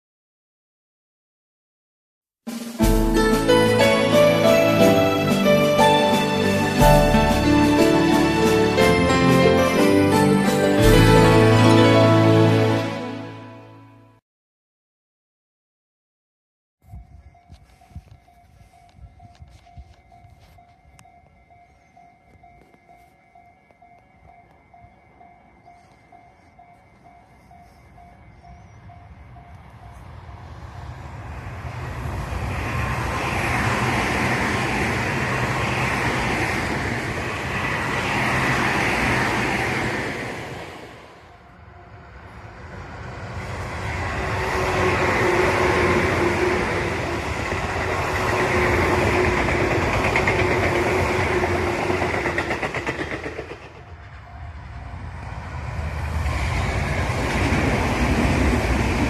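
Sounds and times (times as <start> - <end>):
train whining tone: 2.5 - 13.8, 16.9 - 59.0
train wheels rumbling on rail: 2.8 - 10.0, 23.6 - 59.0.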